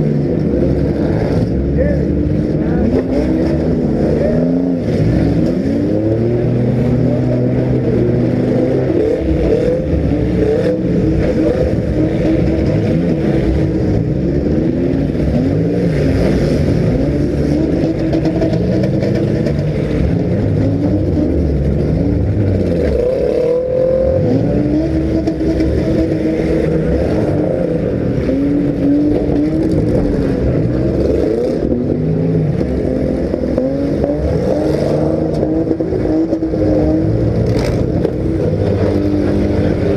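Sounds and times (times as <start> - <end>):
car engines revving: 0.0 - 39.9.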